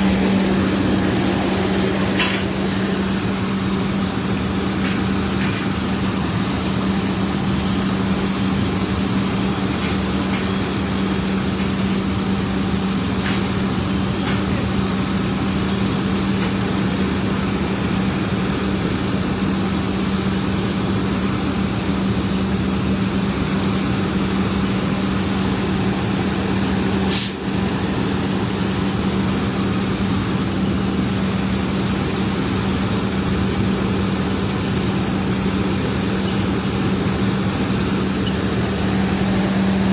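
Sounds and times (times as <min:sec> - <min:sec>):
heavy truck engine running: 0:00.0 - 0:39.9
brief high hiss: 0:27.1 - 0:27.4.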